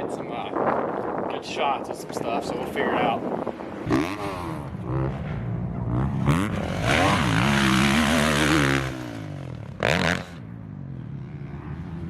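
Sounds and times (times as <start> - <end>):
dirt bike engine revving: 3.8 - 12.0.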